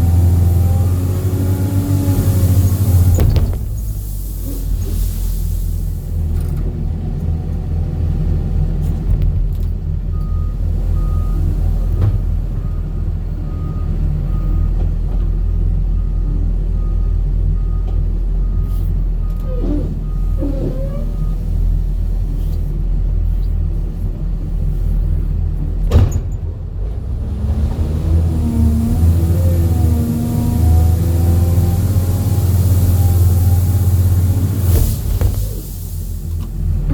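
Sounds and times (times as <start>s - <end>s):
vehicle low rumble: 0.0s - 36.9s
sharp knock: 3.2s - 4.0s.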